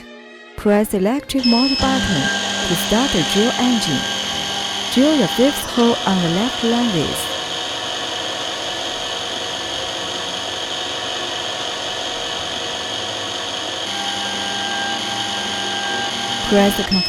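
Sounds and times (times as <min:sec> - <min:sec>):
small high-speed drill motor: 0:01.4 - 0:17.0.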